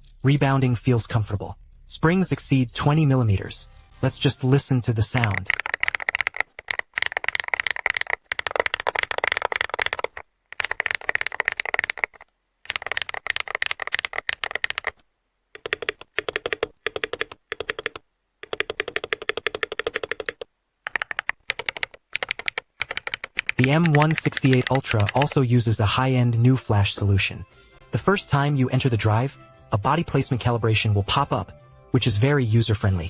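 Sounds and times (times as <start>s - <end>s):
mechanical keyboard typing: 5.1s - 15.0s, 15.6s - 25.4s.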